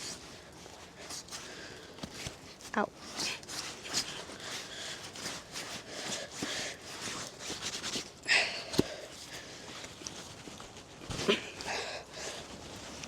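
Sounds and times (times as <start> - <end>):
rustling: 0.0 - 13.0
person breathing and sniffing: 3.1 - 7.4.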